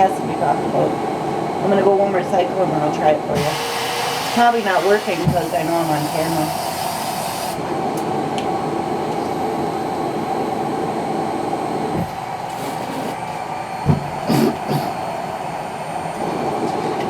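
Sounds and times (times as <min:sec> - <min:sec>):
blower whirring: 0:00.0 - 0:17.0.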